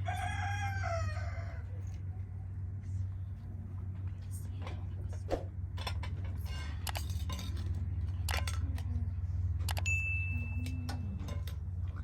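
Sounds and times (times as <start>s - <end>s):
dishes and cutlery clinking: 5.8s - 7.8s.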